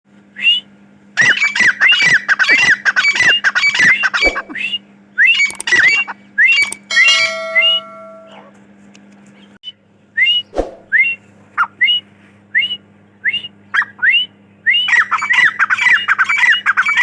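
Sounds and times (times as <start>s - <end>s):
francolin calling: 1.2s - 8.5s, 12.6s - 17.0s.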